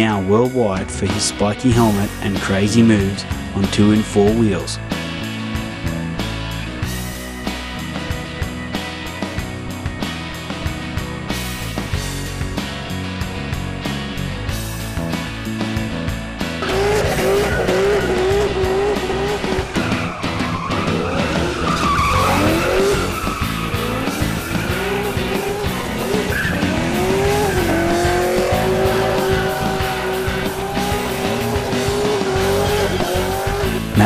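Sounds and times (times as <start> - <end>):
rock music: 0.0 - 34.0
car engine revving: 5.2 - 34.0
tyres squealing: 16.6 - 34.0.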